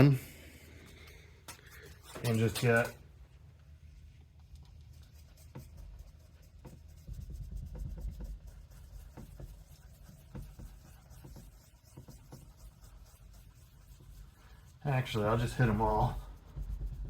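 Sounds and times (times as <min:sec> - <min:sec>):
hand scrubbing bodywork: 0:05.0 - 0:17.0.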